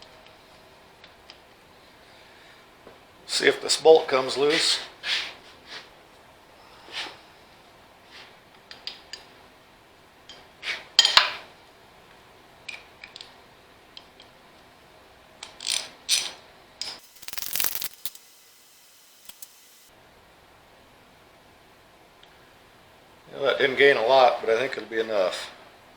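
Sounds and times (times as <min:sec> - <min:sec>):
wrench clicks and clanks: 0:15.4 - 0:18.4, 0:19.1 - 0:19.7.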